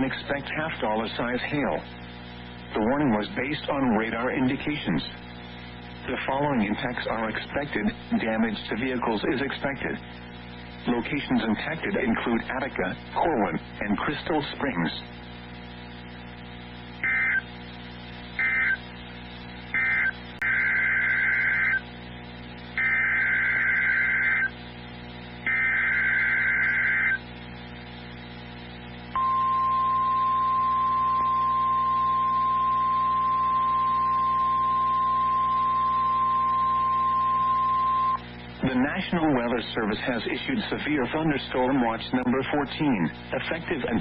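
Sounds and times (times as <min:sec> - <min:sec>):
buzzy data bursts: 0:14.0 - 0:38.2.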